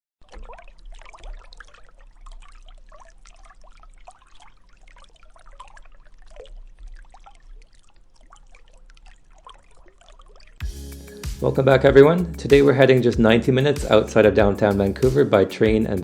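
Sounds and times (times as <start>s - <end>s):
water trickling and bubbling: 0.2s - 11.0s.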